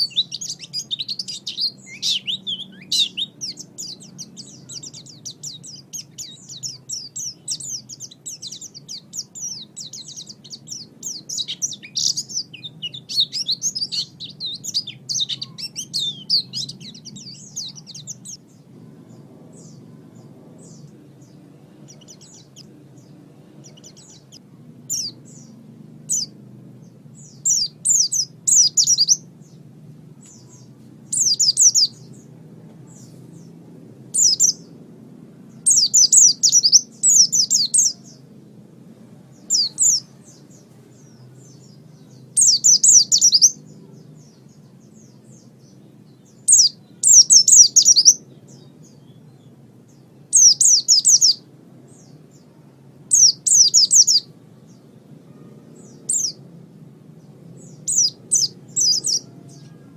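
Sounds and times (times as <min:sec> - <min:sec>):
bird singing high sliding notes: 0:00.0 - 0:32.3
faint low hum: 0:00.0 - 0:59.9.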